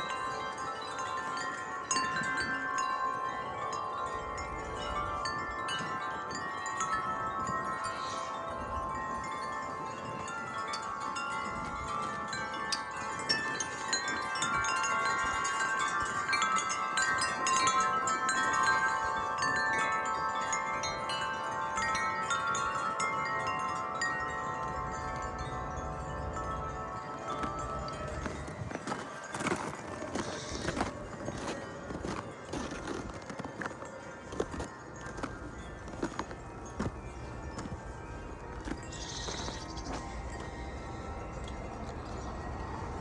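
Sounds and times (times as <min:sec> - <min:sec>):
wind chimes ringing: 0:00.0 - 0:43.0
low wind rumble: 0:20.8 - 0:43.0.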